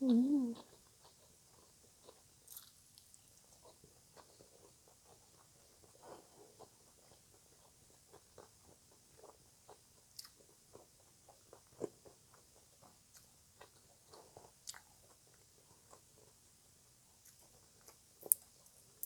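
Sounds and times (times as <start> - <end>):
soft crunchy chewing: 0.0 - 19.0.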